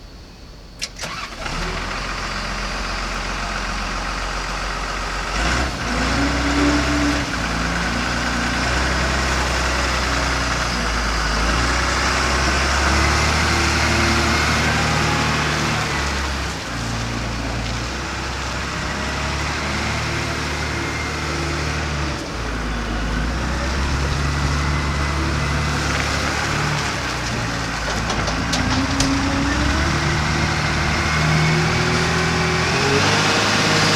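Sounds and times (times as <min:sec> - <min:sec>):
diesel engine revving: 0:00.8 - 0:33.9.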